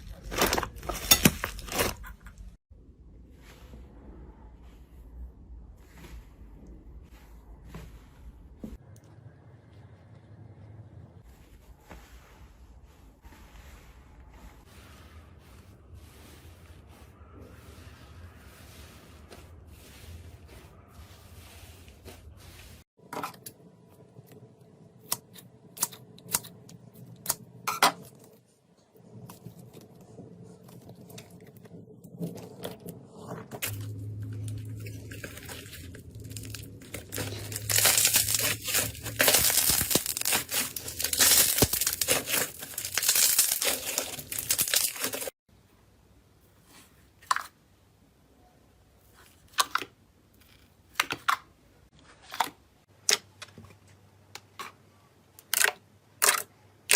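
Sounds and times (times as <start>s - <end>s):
slime squeezed and crackling: 34.8s - 45.3s.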